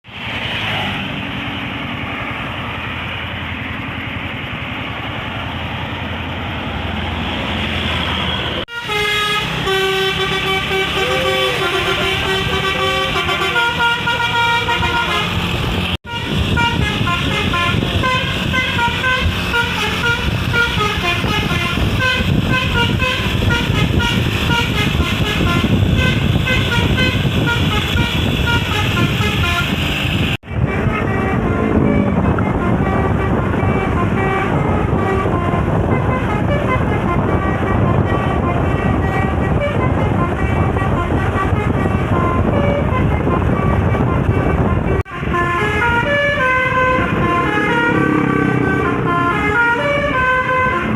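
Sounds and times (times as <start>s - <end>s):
bus engine and road noise: 0.0s - 50.9s
musical air horn playing a tune: 8.7s - 50.9s.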